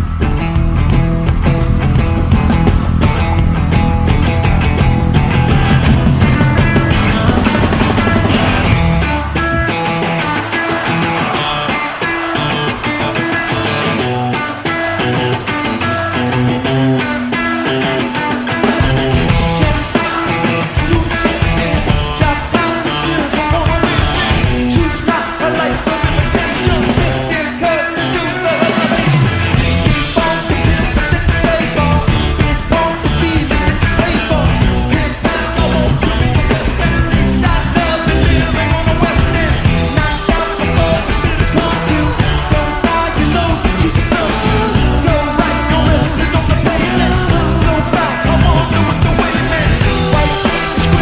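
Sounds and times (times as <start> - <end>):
rock music with singing: 0.0 - 51.0.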